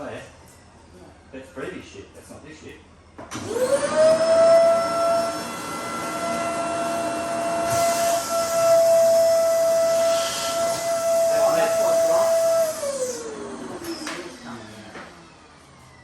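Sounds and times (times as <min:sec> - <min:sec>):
motor-driven tool whining: 0:03.3 - 0:16.0.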